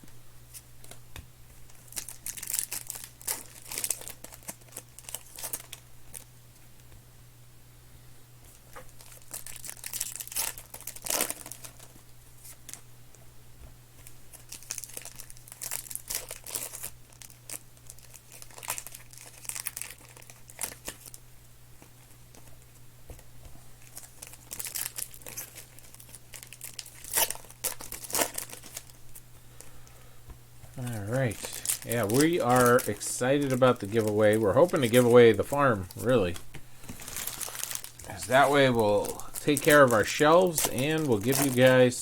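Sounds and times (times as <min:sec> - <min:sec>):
card pack wrappers tearing and crinkling: 0:01.7 - 0:06.3, 0:08.6 - 0:12.8, 0:14.0 - 0:21.2, 0:23.8 - 0:29.2, 0:30.8 - 0:42.0
cards being handled: 0:30.3 - 0:42.0.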